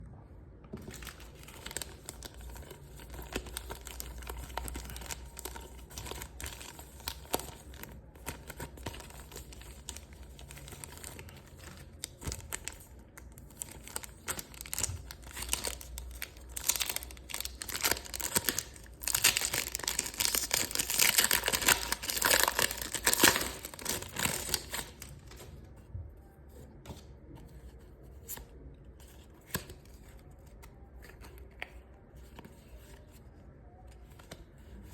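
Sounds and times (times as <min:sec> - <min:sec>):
plastic packaging crinkling and tearing: 0:00.8 - 0:25.7.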